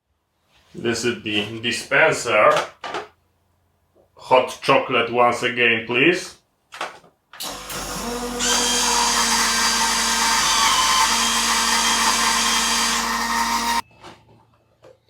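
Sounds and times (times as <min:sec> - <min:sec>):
vending machine motors whirring: 0:07.4 - 0:13.8.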